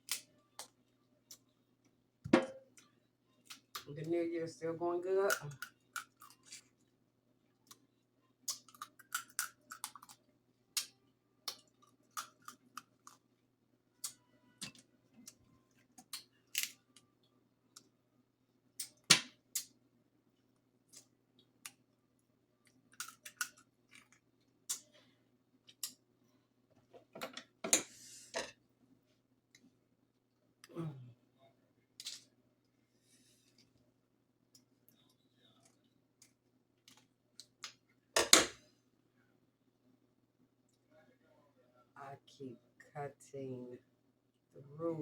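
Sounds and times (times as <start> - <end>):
crab shells cracking: 5.3 - 6.6, 8.4 - 10.2, 10.8 - 13.2, 16.0 - 16.8, 22.9 - 24.9.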